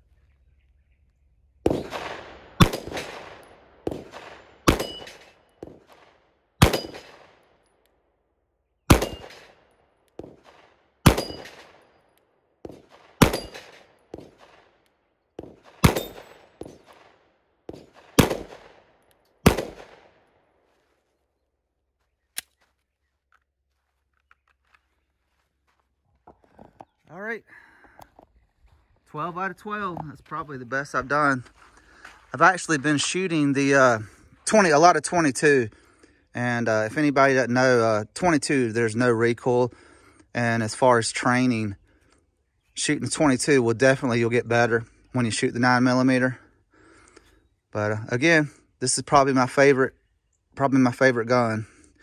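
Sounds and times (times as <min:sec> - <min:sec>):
pistol shots: 0:01.6 - 0:07.6, 0:08.8 - 0:12.0, 0:12.6 - 0:20.3
bullet ringing on steel plate: 0:04.7 - 0:05.8, 0:06.7 - 0:07.1, 0:11.1 - 0:11.7, 0:12.7 - 0:14.3, 0:15.9 - 0:16.8.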